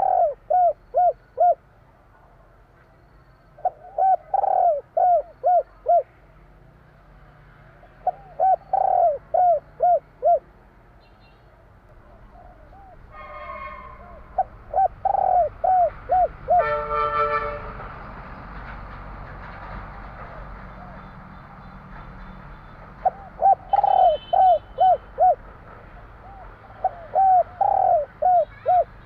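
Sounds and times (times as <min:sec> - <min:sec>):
dove cooing: 0:00.0 - 0:01.6, 0:03.6 - 0:06.2, 0:08.0 - 0:10.5, 0:12.0 - 0:13.1, 0:13.9 - 0:16.8, 0:23.0 - 0:25.5, 0:26.2 - 0:29.0.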